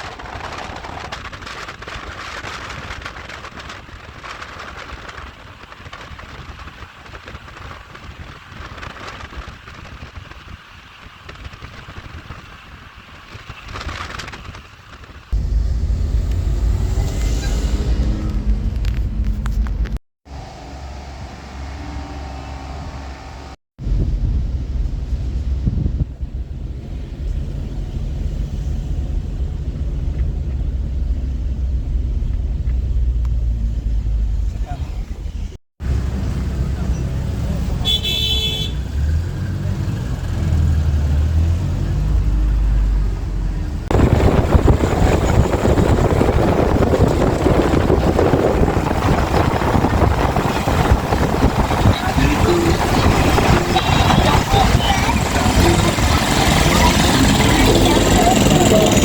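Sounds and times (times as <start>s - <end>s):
wind buffeting microphone: 0.0s - 20.0s, 23.8s - 38.0s, 39.1s - 59.0s
vehicle engine running: 14.8s - 59.0s.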